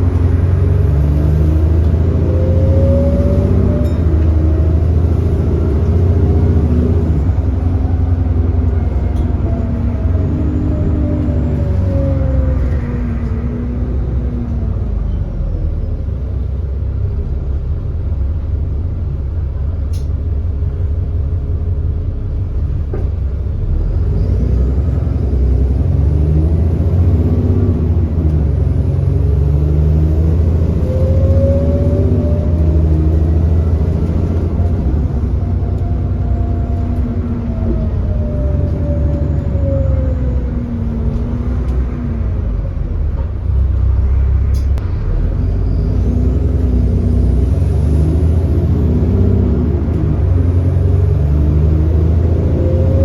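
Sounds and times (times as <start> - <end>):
bus diesel engine: 0.0 - 53.0.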